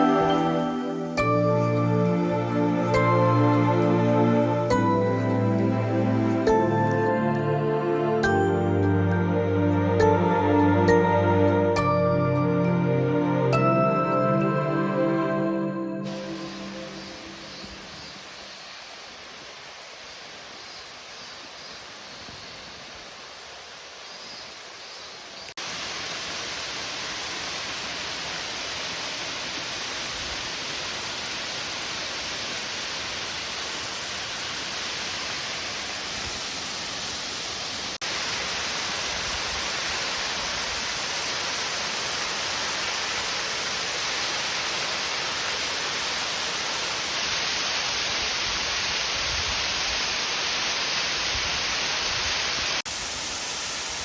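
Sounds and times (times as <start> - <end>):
waterfall roaring: 0.0 - 7.0, 16.1 - 22.1, 25.6 - 54.0.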